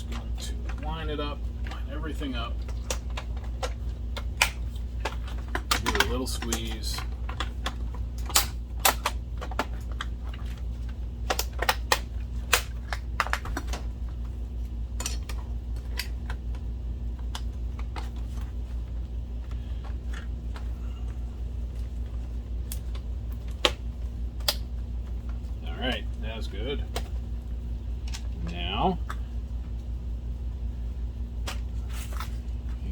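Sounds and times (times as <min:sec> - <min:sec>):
steady low hum: 0:00.0 - 0:32.9
plastic parts clicking together: 0:02.6 - 0:10.6.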